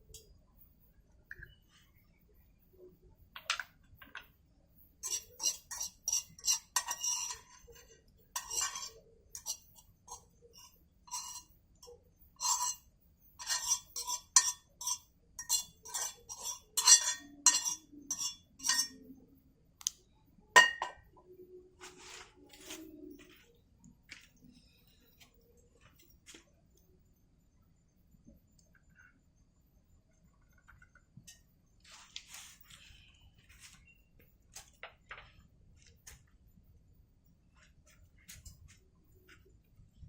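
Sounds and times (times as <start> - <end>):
metal utensils clinking on cookware: 5.0 - 12.8, 13.4 - 19.1, 20.6 - 21.0.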